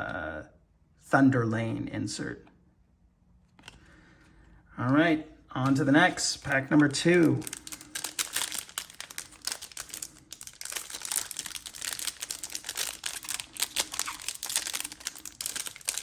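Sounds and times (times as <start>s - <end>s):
foil pack tearing and crinkling: 7.2s - 16.0s.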